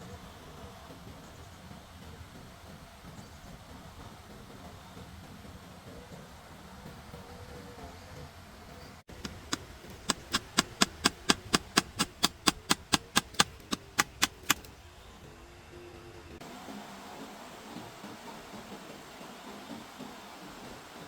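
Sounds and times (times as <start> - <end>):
sharp evenly spaced knocks: 9.1 - 14.7.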